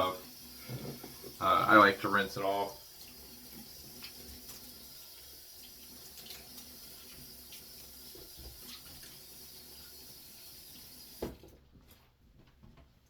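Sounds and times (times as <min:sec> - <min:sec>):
faucet running into sink: 0:00.0 - 0:11.4
small clicks and splashes: 0:04.0 - 0:09.2.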